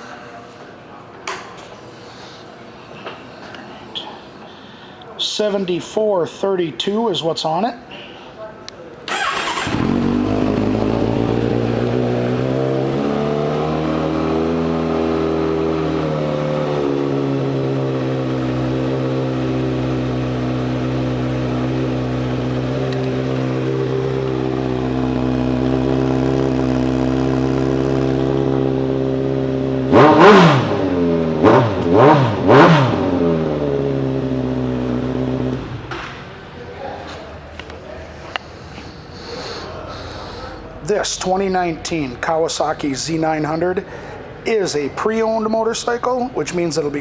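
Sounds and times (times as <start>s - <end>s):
motorcycle engine idling: 9.1s - 35.9s
motorcycle throttle blips: 9.1s - 36.0s.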